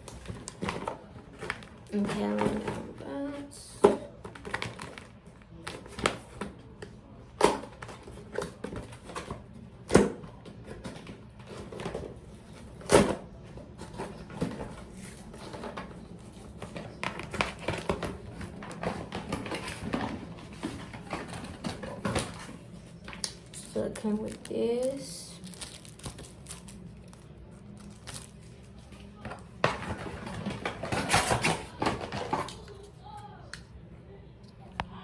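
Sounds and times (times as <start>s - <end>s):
clicks and knocks handling box: 3.8s - 24.4s, 29.2s - 32.7s
packaging rustling: 4.2s - 6.4s, 13.8s - 32.8s.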